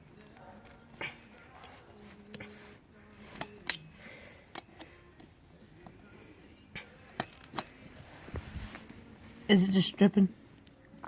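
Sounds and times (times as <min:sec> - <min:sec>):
hand wrench clicking against bolt: 0:03.4 - 0:03.9, 0:07.2 - 0:07.7.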